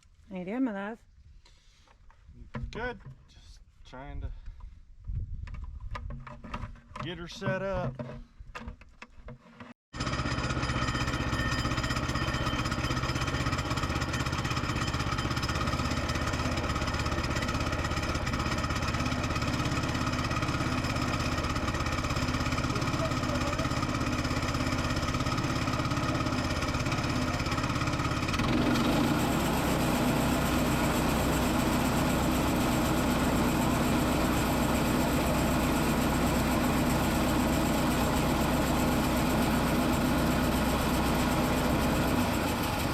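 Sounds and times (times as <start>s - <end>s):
heavy equipment engine running: 10.0s - 42.9s.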